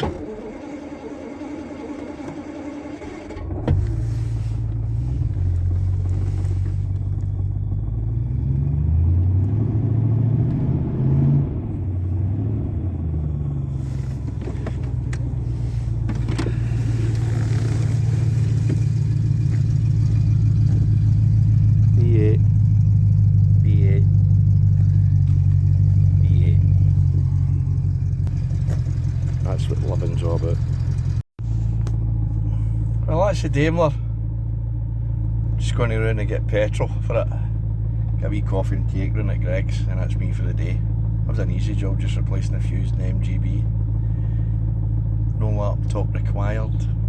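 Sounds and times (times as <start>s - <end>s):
starter motor cranking: 0.0s - 7.8s, 13.8s - 22.0s
car engine revving and idling: 0.0s - 47.0s.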